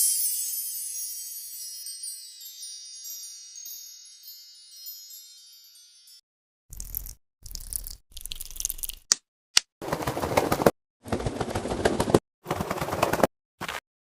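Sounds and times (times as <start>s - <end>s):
sparkly tinkling chime: 0.0s - 6.2s.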